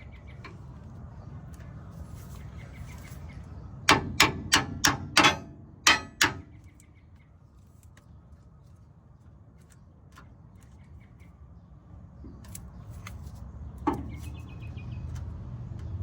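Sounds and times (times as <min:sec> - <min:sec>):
hammer striking metal: 0:03.9 - 0:06.7.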